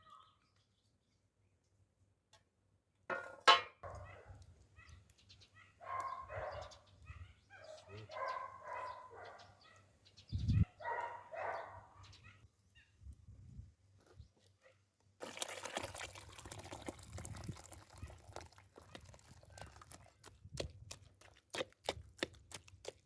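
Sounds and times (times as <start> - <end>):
dog barking: 3.9 - 5.0, 5.6 - 9.9, 10.5 - 12.4, 18.0 - 18.2.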